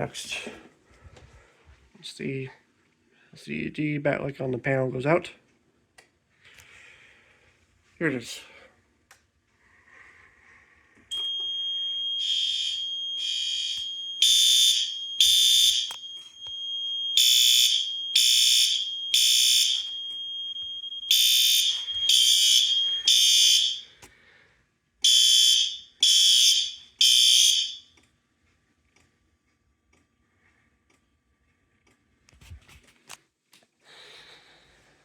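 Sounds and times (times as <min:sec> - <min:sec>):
fire alarm horn blasts: 0:11.1 - 0:24.0, 0:25.0 - 0:27.9
steady high-pitched tone: 0:11.2 - 0:23.9.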